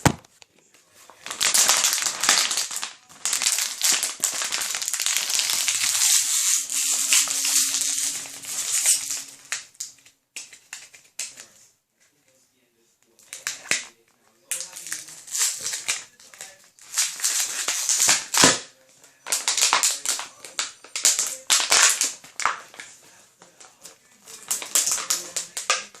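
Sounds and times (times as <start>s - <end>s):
carbonated drink fizzing: 1.3s - 9.3s.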